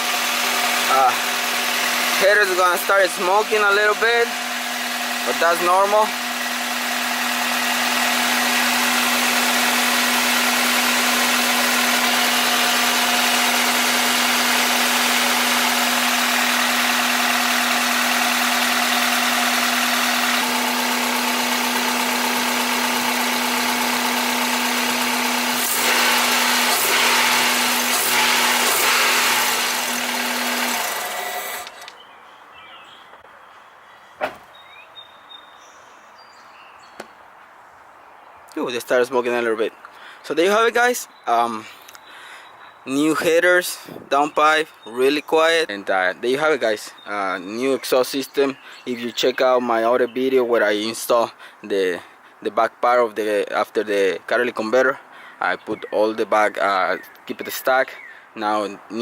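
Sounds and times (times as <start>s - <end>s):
car engine idling: 0.0s - 31.9s.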